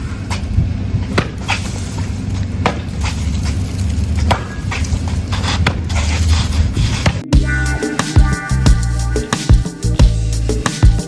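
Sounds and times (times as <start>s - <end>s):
steady low rumble: 7.2s - 11.0s.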